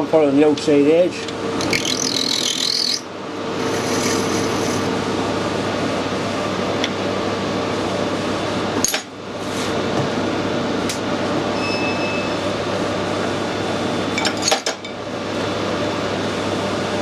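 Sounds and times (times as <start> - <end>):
metal lathe humming: 1.3 - 5.1.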